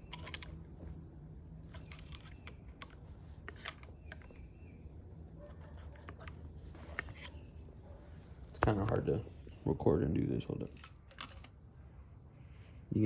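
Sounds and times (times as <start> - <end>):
screwdriver clicking on plastic trim: 0.0 - 0.6
steady low hum: 0.0 - 13.0.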